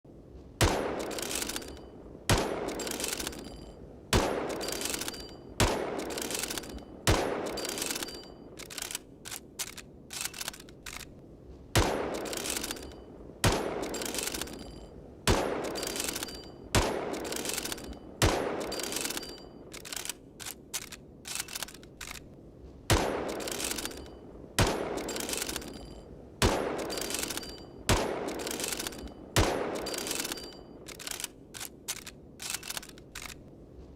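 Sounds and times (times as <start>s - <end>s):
rifle firing single shots: 0.6s - 9.0s, 11.8s - 20.1s, 22.9s - 31.8s
rifle reloading clicks: 0.6s - 11.2s, 11.8s - 33.5s.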